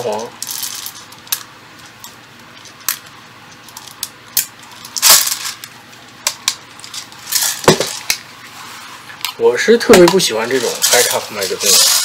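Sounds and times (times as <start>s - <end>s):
rattling scrapes: 10.5s - 12.0s.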